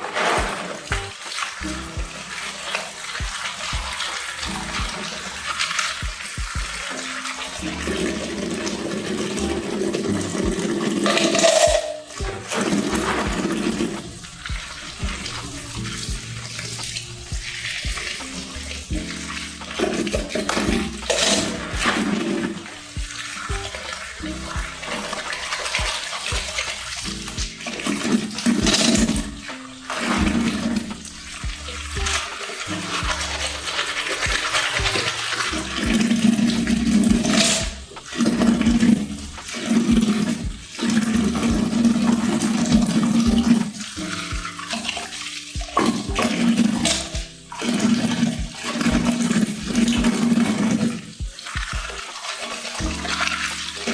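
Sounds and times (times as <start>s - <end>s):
keycaps sloshing in soapy water: 0.0s - 53.9s.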